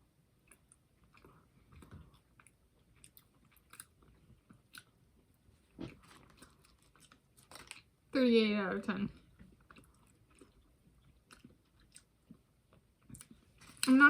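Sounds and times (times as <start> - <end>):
chewing with wet mouth clicks: 0.4 - 5.3, 9.2 - 13.9.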